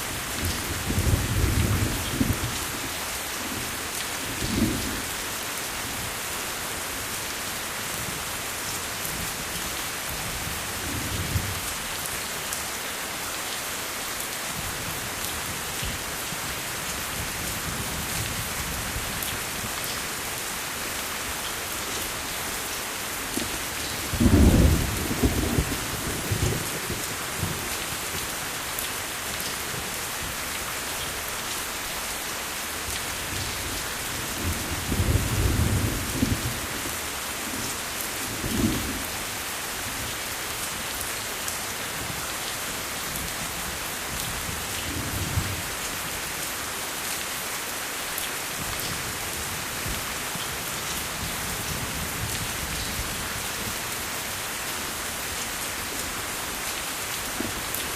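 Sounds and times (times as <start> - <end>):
steady rain falling: 0.0 - 57.9
thunder rumbling: 24.1 - 27.6.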